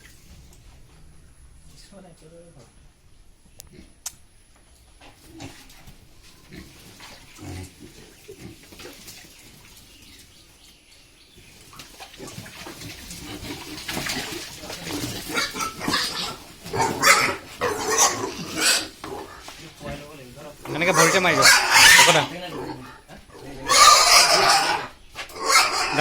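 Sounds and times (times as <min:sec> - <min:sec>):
pigs grunting: 0:05.0 - 0:09.7, 0:11.8 - 0:26.0
pigs squealing: 0:12.0 - 0:26.0.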